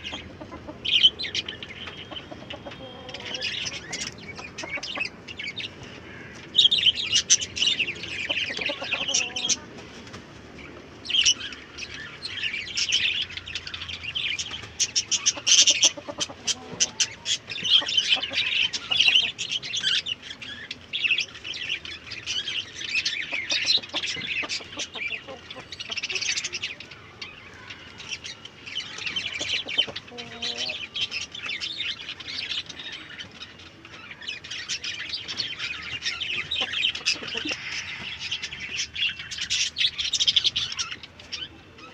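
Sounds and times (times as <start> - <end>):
chicken clucking: 0.0 - 6.4, 7.3 - 10.2, 14.4 - 20.0, 22.9 - 27.0, 28.0 - 32.0, 35.0 - 41.9
chickens chirping: 0.0 - 41.9.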